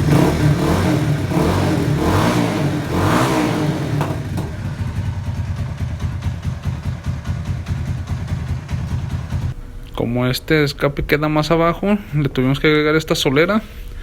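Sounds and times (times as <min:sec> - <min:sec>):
motorcycle engine revving and idling: 0:00.0 - 0:09.6.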